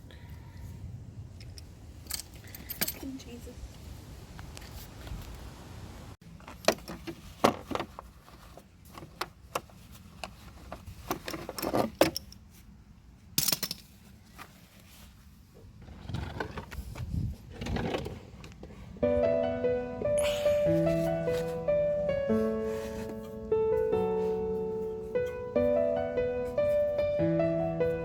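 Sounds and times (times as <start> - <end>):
background music: 19.0 - 28.0.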